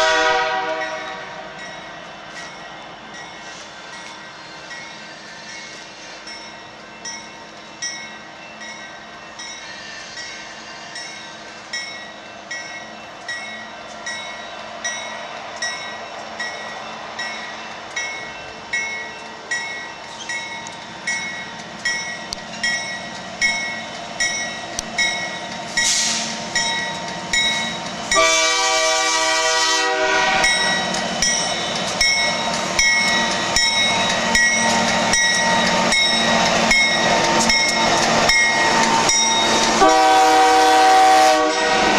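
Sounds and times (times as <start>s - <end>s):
locomotive air horn blast: 0.0s - 1.6s, 28.2s - 30.6s, 39.7s - 41.9s
train running noise: 0.0s - 41.9s
bell ringing: 0.8s - 28.2s, 30.4s - 39.8s.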